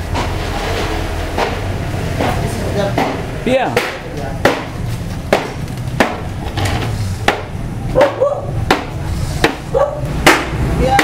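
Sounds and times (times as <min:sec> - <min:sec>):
chopping bamboo by hand: 0:03.0 - 0:06.3, 0:07.2 - 0:11.0.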